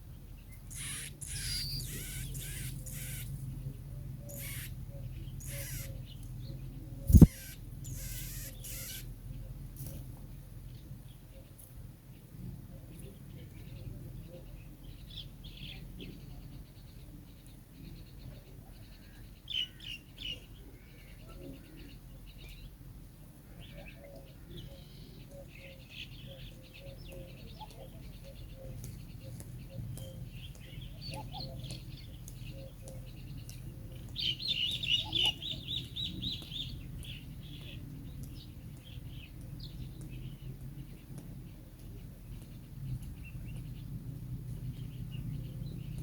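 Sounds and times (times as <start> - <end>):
small bird chirping: 0.5 - 3.4, 4.3 - 6.4, 7.1 - 9.1, 24.2 - 40.6.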